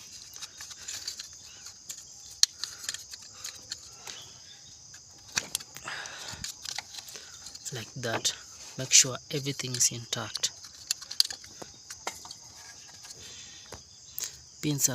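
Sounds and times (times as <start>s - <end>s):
insects chirring: 0.0s - 14.9s.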